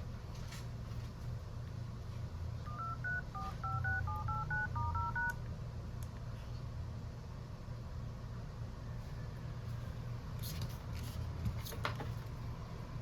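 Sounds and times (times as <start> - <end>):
steady low hum: 0.0 - 13.0
phone keypad dial tones: 2.7 - 5.4.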